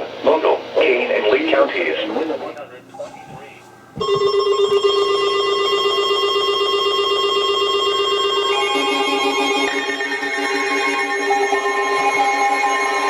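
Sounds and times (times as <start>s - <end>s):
lower pulsing alarm: 2.6s - 13.0s
rapidly trilling alarm tone: 2.6s - 13.0s.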